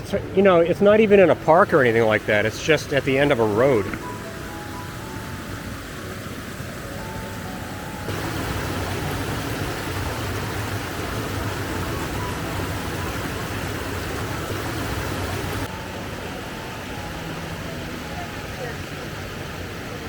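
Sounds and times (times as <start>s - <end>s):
flowing creek water: 0.0s - 20.0s.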